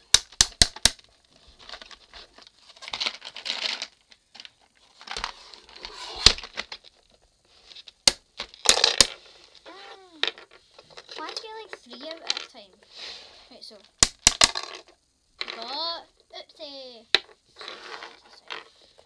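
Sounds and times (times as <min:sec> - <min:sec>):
plastic figures rattling: 0:01.6 - 0:07.2, 0:08.4 - 0:12.8, 0:13.7 - 0:15.9.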